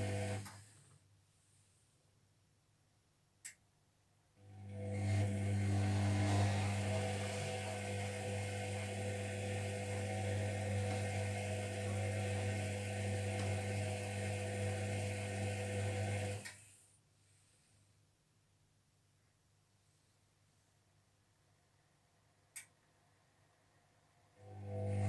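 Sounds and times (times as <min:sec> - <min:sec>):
washing machine drum motor humming: 0:00.0 - 0:00.4, 0:04.8 - 0:16.5.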